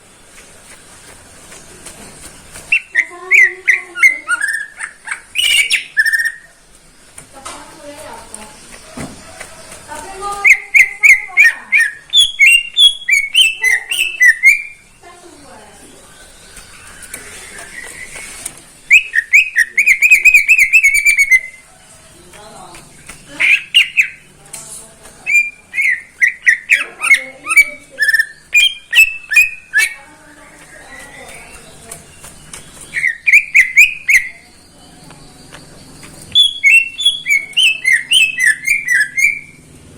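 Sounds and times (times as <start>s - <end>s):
bird singing whistled notes: 2.7s - 6.5s, 10.4s - 21.6s, 23.0s - 24.3s, 25.2s - 30.1s, 30.7s - 39.6s.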